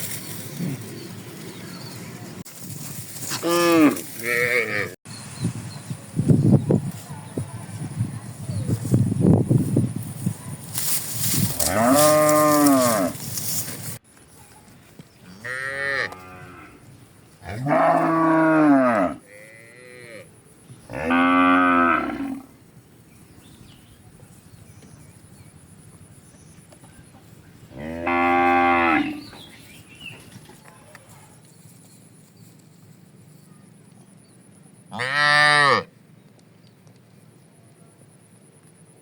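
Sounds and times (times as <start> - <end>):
cattle mooing: 3.4 - 5.0, 11.6 - 13.2, 17.5 - 20.2, 27.8 - 29.3, 35.0 - 35.9.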